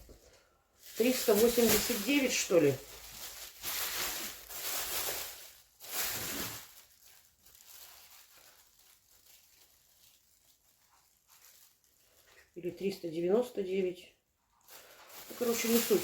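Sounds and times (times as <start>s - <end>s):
packaging rustling: 0.0s - 12.6s, 14.6s - 16.0s.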